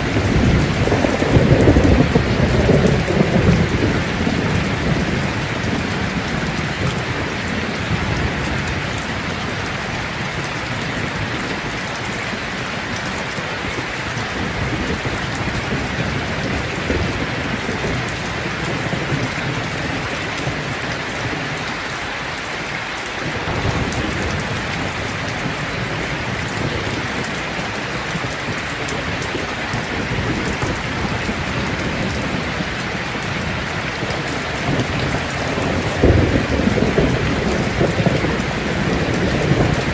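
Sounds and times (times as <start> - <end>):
distant thunder rumble: 0.0 - 12.3, 23.2 - 39.9
steady rain falling: 0.0 - 39.9.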